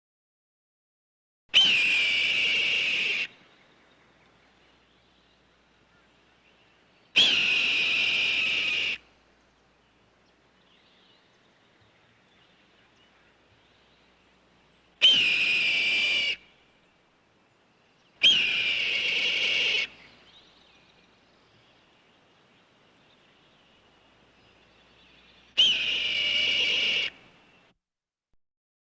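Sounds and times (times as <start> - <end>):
hawk screaming: 1.6 - 3.3, 7.2 - 9.0, 15.0 - 16.4, 18.2 - 19.9, 25.6 - 27.2.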